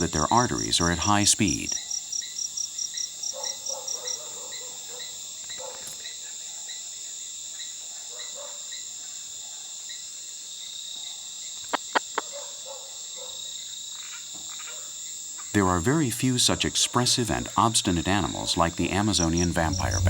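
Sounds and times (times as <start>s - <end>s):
high insect drone: 0.0s - 7.9s, 13.5s - 20.0s
crickets chirping: 0.0s - 20.0s.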